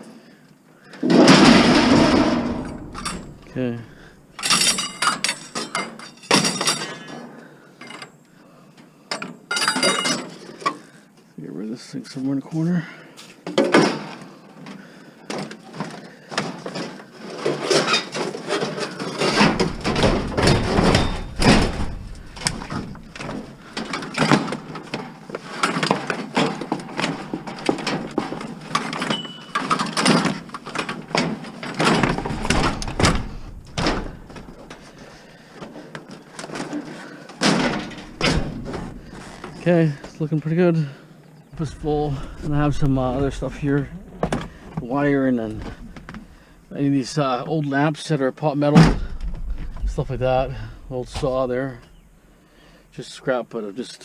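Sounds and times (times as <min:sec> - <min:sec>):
scrap metal clanking: 0:01.0 - 0:07.2, 0:16.8 - 0:35.8, 0:36.5 - 0:40.1, 0:41.6 - 0:46.7.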